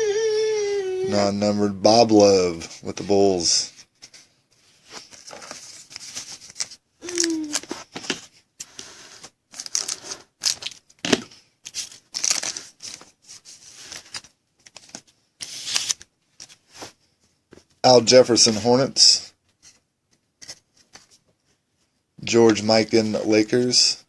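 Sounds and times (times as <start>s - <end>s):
card wrappers crinkling and tearing: 5.0s - 7.8s, 9.5s - 13.1s.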